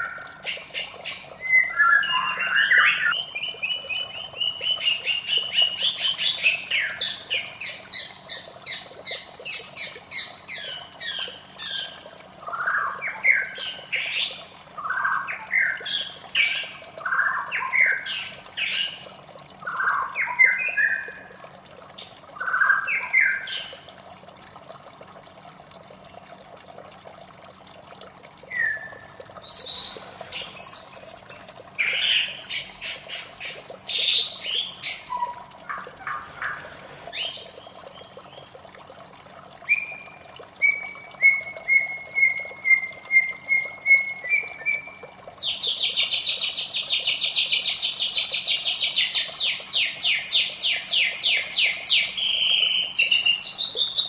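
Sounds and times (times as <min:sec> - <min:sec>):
bird singing: 0:01.4 - 0:07.4, 0:28.5 - 0:32.4, 0:39.7 - 0:46.6.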